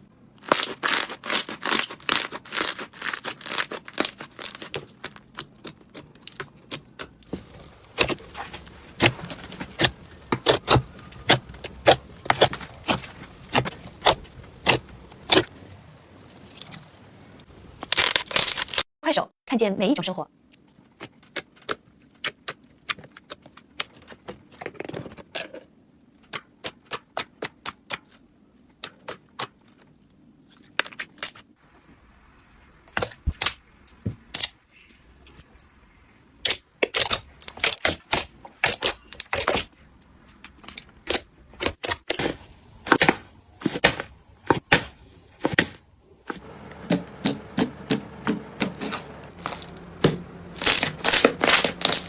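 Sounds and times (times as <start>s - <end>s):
crunchy slime crackling and popping: 0.4s - 18.9s, 46.3s - 52.0s.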